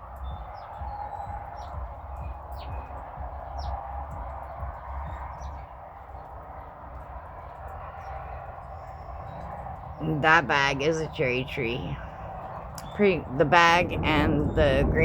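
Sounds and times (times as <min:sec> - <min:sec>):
low rumble: 0:00.0 - 0:15.0
small birds chirping: 0:00.0 - 0:15.0.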